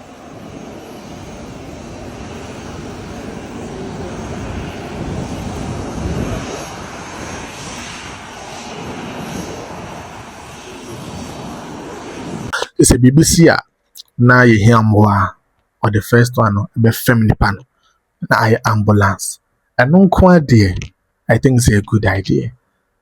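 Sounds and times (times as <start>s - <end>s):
aeroplane engines running: 0.0s - 13.4s.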